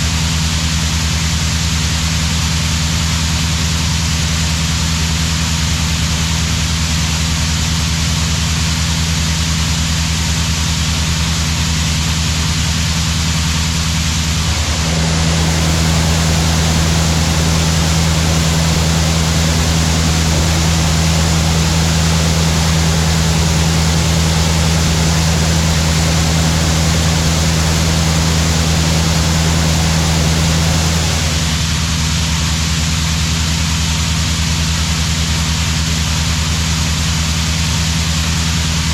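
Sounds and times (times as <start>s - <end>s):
broad rushing noise: 13.3s - 31.9s
farm machine engine humming: 13.5s - 31.8s.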